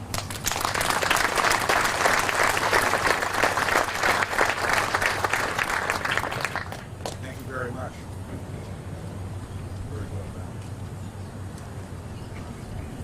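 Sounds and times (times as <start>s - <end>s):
audience applauding: 0.0s - 7.2s.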